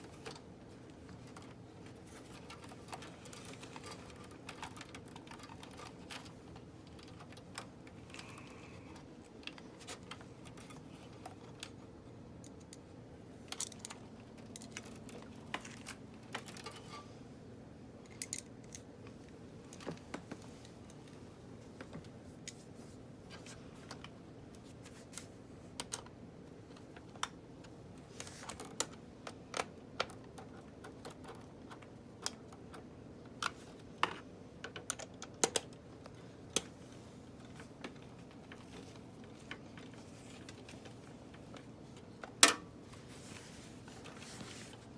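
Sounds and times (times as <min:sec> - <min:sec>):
small hard parts clicking: 0:00.1 - 0:12.9, 0:13.5 - 0:17.0.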